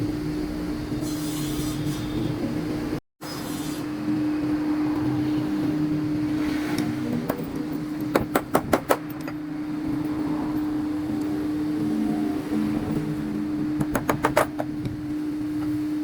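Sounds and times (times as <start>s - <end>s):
motor hum: 2.6s - 16.0s
sharp knocks: 13.8s - 14.7s.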